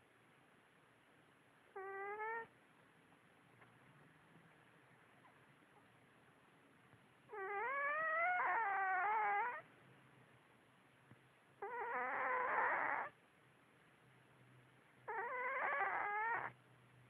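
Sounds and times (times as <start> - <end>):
cat snoring with whimpering notes: 1.7 - 2.5, 7.3 - 9.7, 11.6 - 13.2, 15.0 - 16.6.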